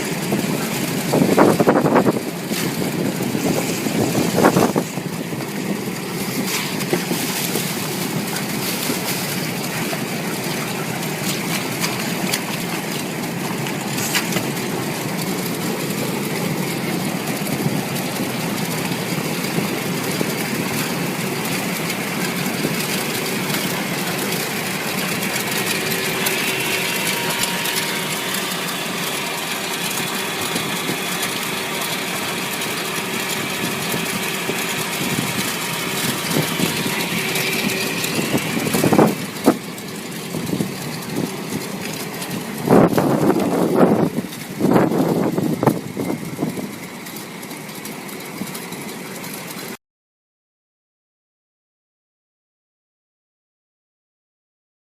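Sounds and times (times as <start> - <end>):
washing machine running: 0.0 - 49.8.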